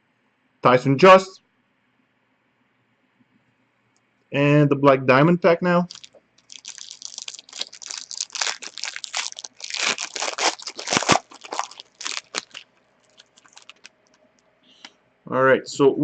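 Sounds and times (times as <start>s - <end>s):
wrapper tearing and crinkling: 5.9s - 13.9s.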